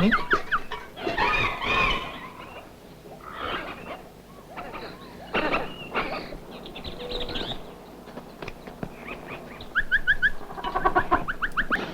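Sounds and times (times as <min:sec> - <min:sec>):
bird-like chirping and clicking: 0:06.6 - 0:11.8.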